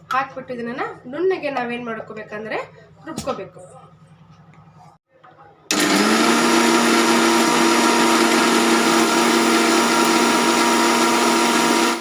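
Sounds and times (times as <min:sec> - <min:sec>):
mixer grinder motor whirring: 0:05.7 - 0:12.0.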